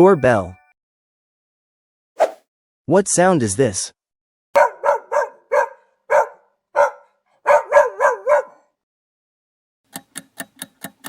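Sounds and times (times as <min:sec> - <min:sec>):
dog barking: 0:04.6 - 0:08.8.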